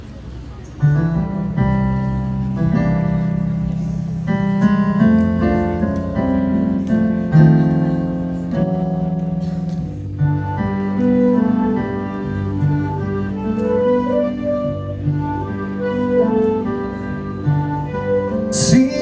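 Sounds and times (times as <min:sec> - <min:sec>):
keyboard piano chords: 0:00.0 - 0:19.0.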